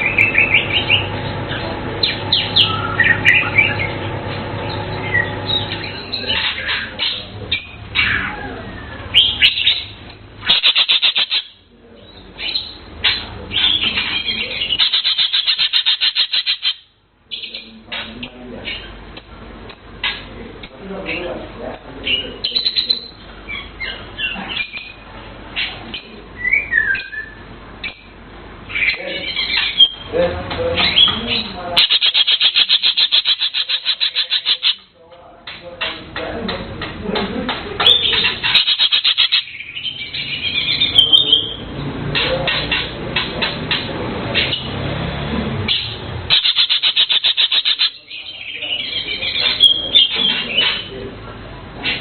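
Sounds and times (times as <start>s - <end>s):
bird chirping and whistling: 0.0s - 4.0s, 4.8s - 8.4s, 9.1s - 11.6s, 13.5s - 16.8s, 26.4s - 27.5s, 28.7s - 30.1s, 30.8s - 34.8s, 37.8s - 41.6s, 45.7s - 50.9s.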